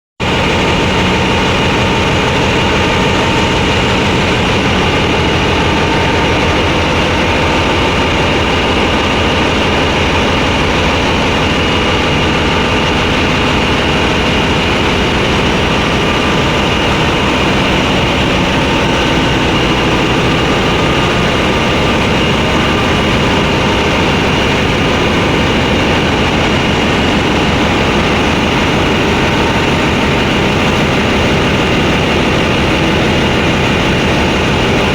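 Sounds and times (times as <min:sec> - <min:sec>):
grinding machine with high whine: 0:00.2 - 0:34.9.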